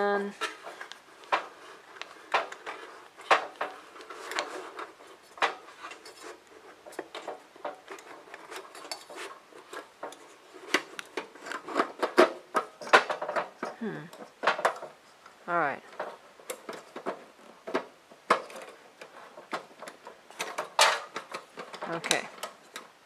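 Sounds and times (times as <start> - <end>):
metal parts scraping and rubbing: 0.2 - 15.2
metal clicks and knocks: 0.4 - 23.0.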